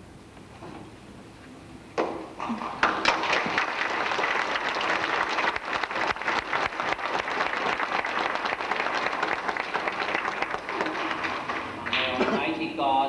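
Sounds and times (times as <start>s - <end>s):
crowd applauding: 2.4s - 12.8s.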